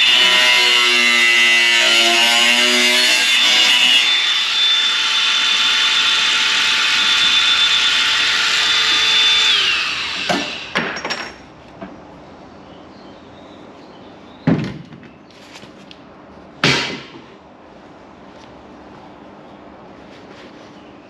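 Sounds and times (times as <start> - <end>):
electric grinder whining: 0.0 - 10.7
sharp metal knocks: 16.6 - 17.3.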